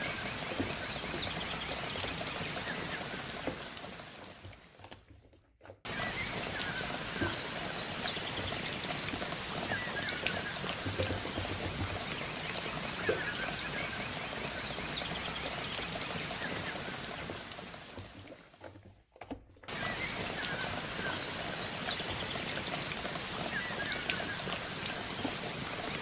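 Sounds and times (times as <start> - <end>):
steady rain falling: 0.0 - 4.9, 5.9 - 18.6, 19.7 - 26.0.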